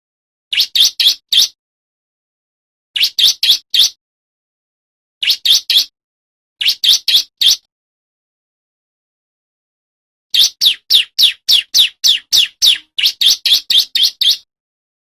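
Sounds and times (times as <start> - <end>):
bird singing high chirps: 0.5 - 1.6, 3.0 - 4.0, 5.2 - 5.9, 6.6 - 7.7, 10.3 - 14.5.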